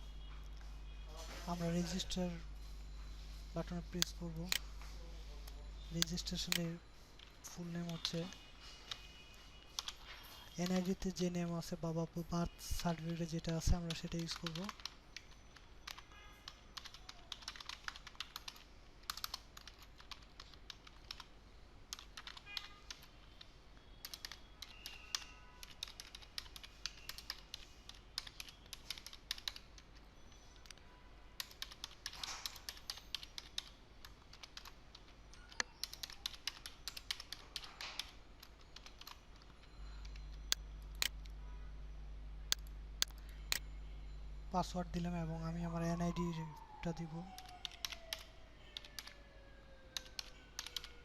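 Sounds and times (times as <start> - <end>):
typing on computer keyboard: 9.7 - 11.2, 12.9 - 21.3, 21.9 - 23.4, 24.0 - 30.8, 31.4 - 41.2, 47.3 - 49.2, 49.9 - 51.0
low electrical hum: 32.8 - 46.8.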